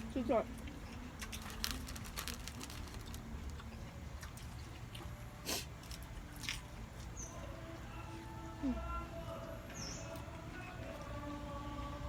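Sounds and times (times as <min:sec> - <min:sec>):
eating clicks and crunches: 0:00.0 - 0:07.2.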